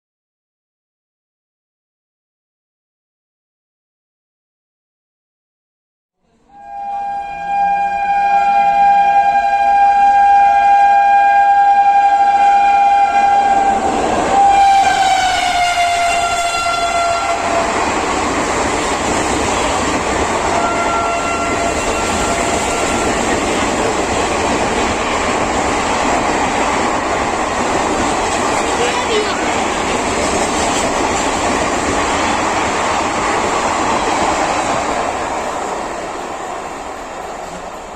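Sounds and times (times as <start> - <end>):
two-note train horn: 6.2 - 17.8, 20.5 - 23.3
train coaches rushing and clattering: 12.3 - 37.9.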